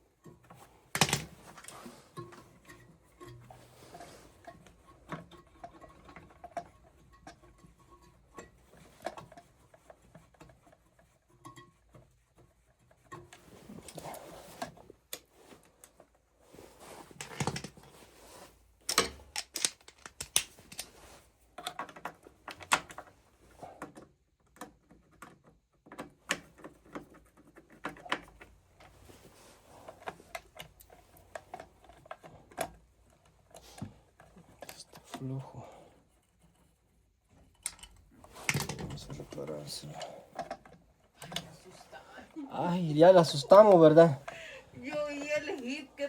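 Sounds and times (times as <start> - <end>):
tools and parts clattering: 0.2 - 12.0, 16.7 - 36.7, 37.3 - 41.8
scraping rustles: 0.4 - 21.6.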